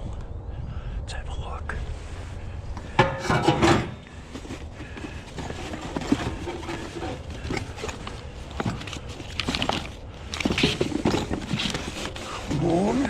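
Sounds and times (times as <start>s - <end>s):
steady low rumble: 0.0s - 13.0s
items knocking and rattling: 2.8s - 13.0s.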